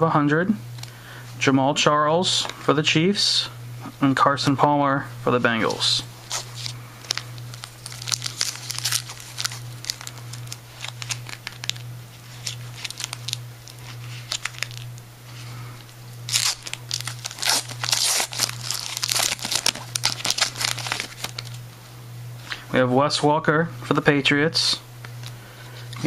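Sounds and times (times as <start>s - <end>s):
steady low hum: 0.0s - 26.0s
foil wrapper crinkling and tearing: 5.6s - 15.0s, 16.2s - 21.6s.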